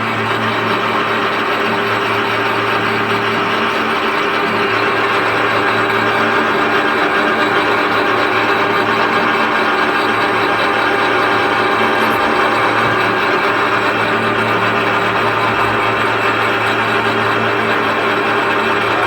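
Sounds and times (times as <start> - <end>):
low motor hum: 0.0 - 19.0.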